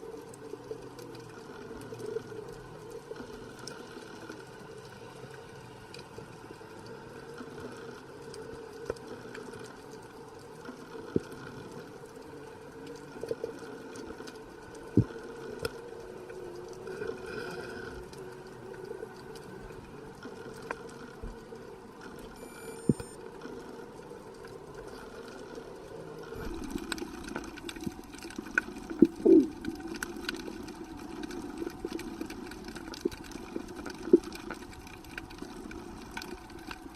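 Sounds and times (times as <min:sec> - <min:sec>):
underwater low rushing: 0:00.0 - 0:36.9
sharp clicks and pops: 0:22.7 - 0:23.2.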